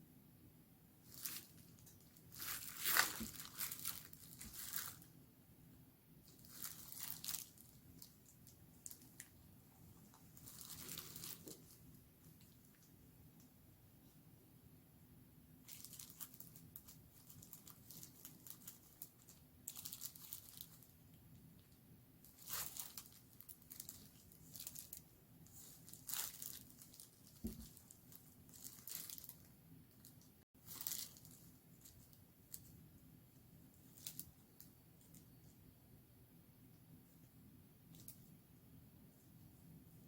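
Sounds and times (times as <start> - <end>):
packaging crinkling and tearing: 1.1 - 5.1, 6.3 - 9.3, 10.3 - 11.8, 15.7 - 20.9, 22.3 - 25.0, 25.6 - 32.6, 33.9 - 34.3.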